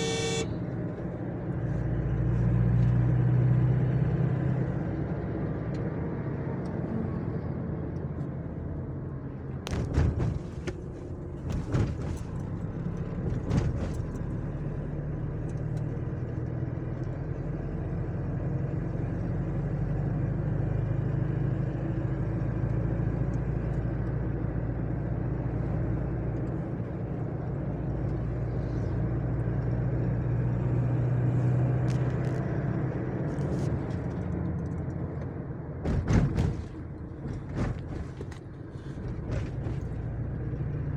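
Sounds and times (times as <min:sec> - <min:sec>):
road noise: 0:00.0 - 0:40.9
vehicle engine drone: 0:00.0 - 0:40.9
sharp knocks and rattles: 0:35.8 - 0:40.2.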